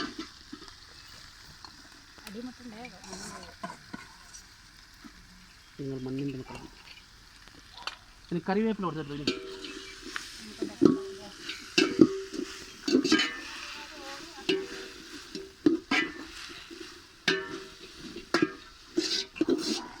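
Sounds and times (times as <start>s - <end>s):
paste sizzling in hot oil: 0.0s - 20.0s
utensil scraping and knocking a pot: 2.9s - 5.2s, 8.8s - 20.0s.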